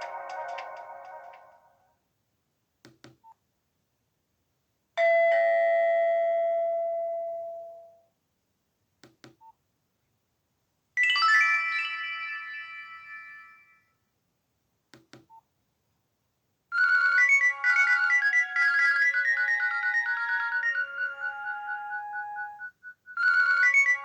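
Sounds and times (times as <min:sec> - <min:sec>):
bright chiming tone: 0:11.0 - 0:13.8
bell-like phone chime: 0:11.0 - 0:13.9, 0:16.8 - 0:22.6, 0:23.2 - 0:24.0.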